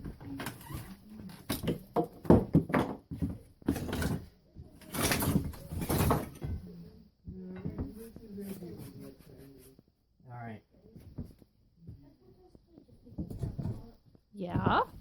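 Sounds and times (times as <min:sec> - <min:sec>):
demolition knocks and creaks: 0:00.0 - 0:06.8.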